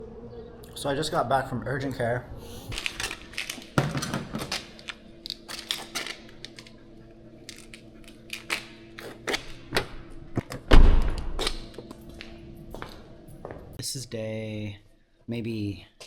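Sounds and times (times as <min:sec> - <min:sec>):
faint steady hum: 0:00.0 - 0:16.0
heavy low thud: 0:10.7 - 0:11.3.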